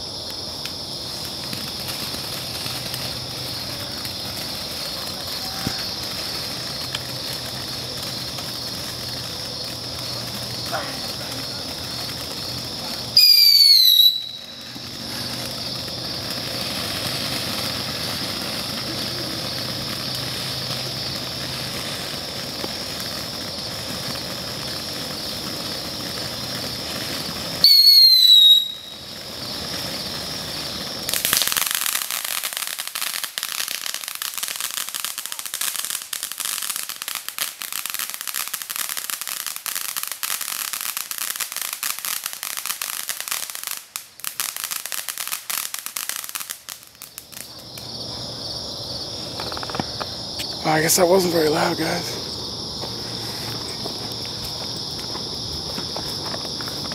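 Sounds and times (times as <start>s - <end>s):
firework crackling: 0.0s - 56.9s
firework hissing spray: 0.0s - 56.9s
firework whistle falling in pitch: 13.2s - 14.8s, 27.6s - 29.1s.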